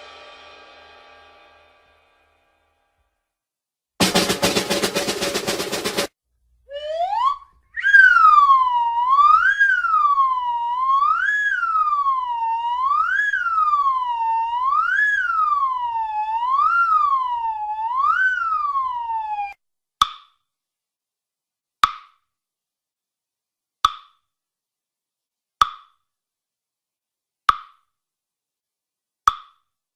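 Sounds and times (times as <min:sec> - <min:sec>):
cartoon siren wailing: 0:06.7 - 0:19.6.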